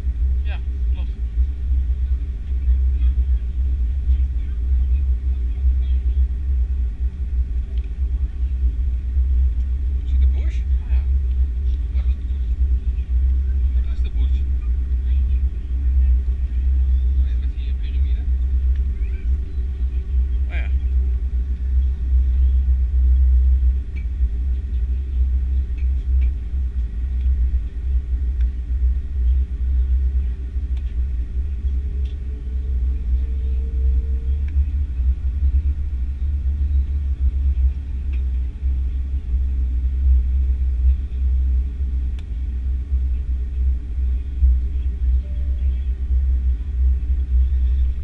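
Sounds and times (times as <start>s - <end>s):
airplane cabin rumble: 0.0s - 48.0s.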